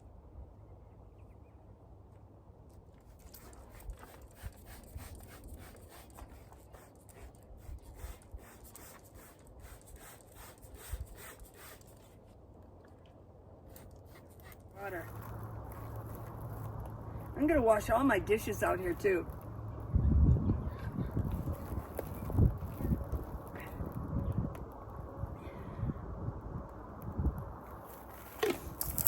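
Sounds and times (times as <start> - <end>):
rubbing and scraping strokes: 2.9 - 12.4, 13.6 - 17.6
faint low rumble: 14.6 - 29.0.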